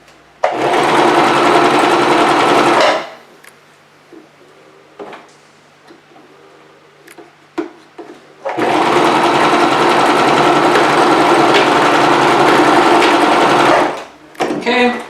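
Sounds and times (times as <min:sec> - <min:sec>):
sewing machine running: 0:00.5 - 0:03.2, 0:08.5 - 0:14.1.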